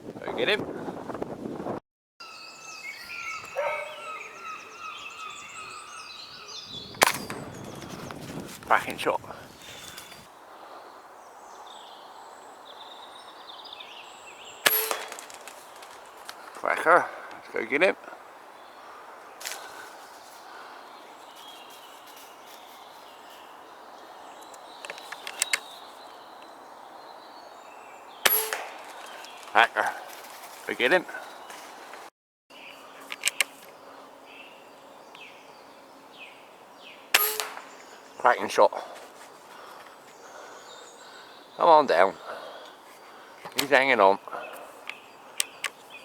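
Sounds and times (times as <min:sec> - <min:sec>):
small birds singing: 0:02.2 - 0:46.0
air rifle firing: 0:14.6 - 0:15.5, 0:28.2 - 0:29.0, 0:37.2 - 0:37.8.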